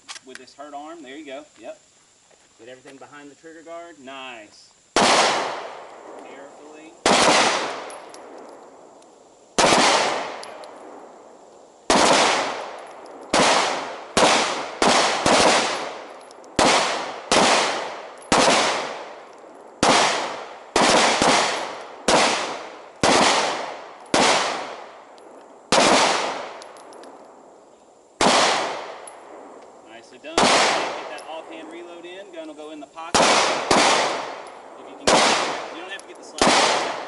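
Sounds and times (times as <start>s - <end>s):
pistol shots with echo: 5.0s - 8.9s, 9.6s - 11.1s, 11.9s - 27.4s, 28.2s - 29.5s, 30.2s - 32.0s, 33.0s - 37.0s.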